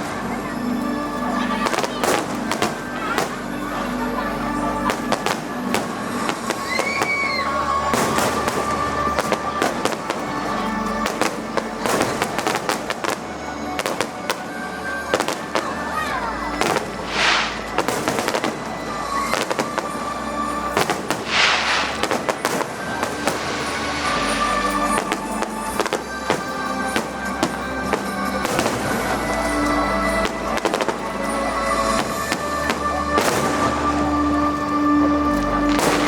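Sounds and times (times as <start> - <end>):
fireworks bangs and crackles: 0.0 - 36.0
fireworks hissing bursts: 0.0 - 36.0.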